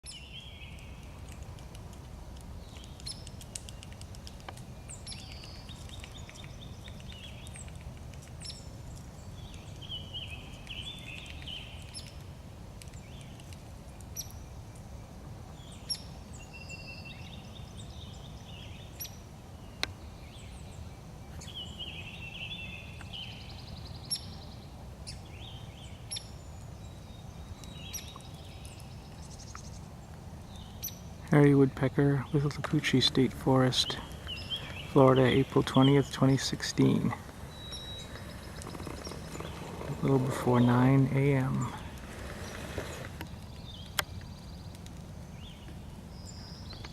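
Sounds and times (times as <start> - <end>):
birds warbling songs: 0.0 - 46.9
low steady rumble: 17.5 - 46.6.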